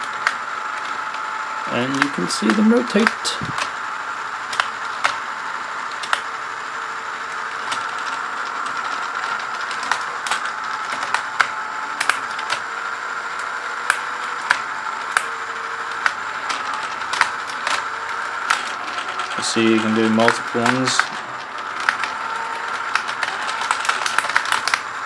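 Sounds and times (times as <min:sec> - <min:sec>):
small electric motor whine: 0:00.0 - 0:25.0
plastic gears clicking: 0:04.5 - 0:05.2, 0:05.9 - 0:06.4, 0:07.6 - 0:12.6, 0:13.8 - 0:25.0.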